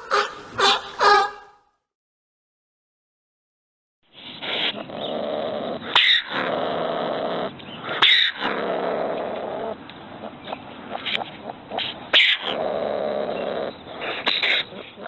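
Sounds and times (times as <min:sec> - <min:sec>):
ringtail growling calls: 0:04.3 - 0:15.0.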